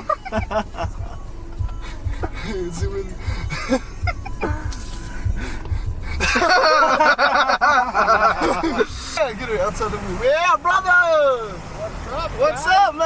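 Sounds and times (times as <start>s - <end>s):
low thumps: 0.3s - 9.2s
loud high-pitched laughter: 6.2s - 8.8s.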